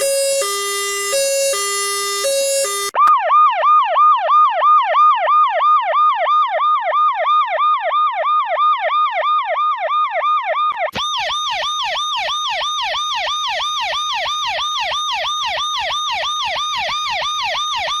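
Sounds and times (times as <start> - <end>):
siren yelping: 0.0 - 3.8, 8.9 - 18.0.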